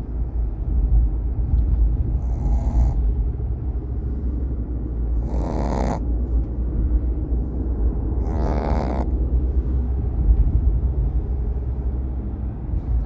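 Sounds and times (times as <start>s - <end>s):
steady low rumble: 0.0s - 13.0s
dog snoring: 2.1s - 3.1s, 5.1s - 6.2s, 8.2s - 9.2s.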